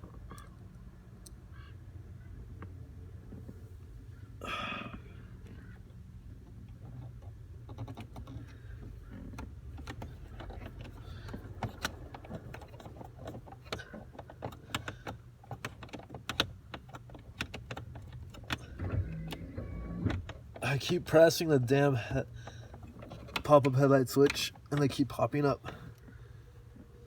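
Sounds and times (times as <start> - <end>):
small parts clicking and rattling: 6.4 - 19.6.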